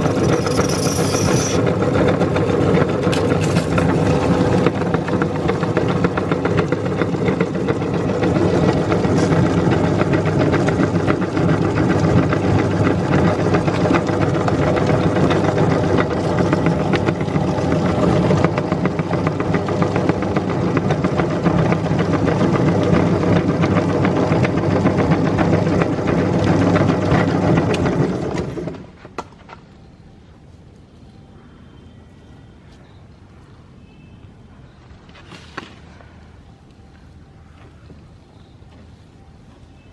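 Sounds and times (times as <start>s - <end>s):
electric meat grinder running: 0.0s - 28.8s.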